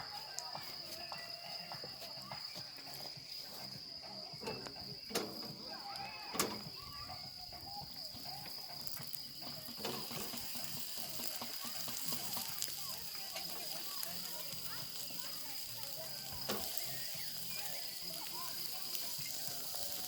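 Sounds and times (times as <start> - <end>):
high insect trilling: 0.8 - 20.0
sharp clicks: 4.4 - 6.8.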